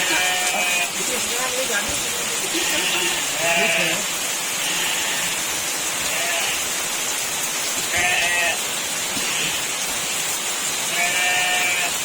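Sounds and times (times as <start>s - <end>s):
goats bleating: 0.0s - 1.4s, 2.1s - 6.8s, 7.9s - 9.8s, 10.9s - 12.0s
heavy rain hissing: 0.0s - 12.0s.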